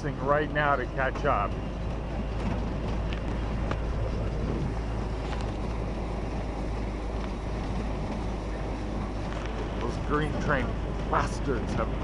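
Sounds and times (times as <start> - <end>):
moving train rumble: 0.0 - 12.0
wind noise: 2.2 - 10.8.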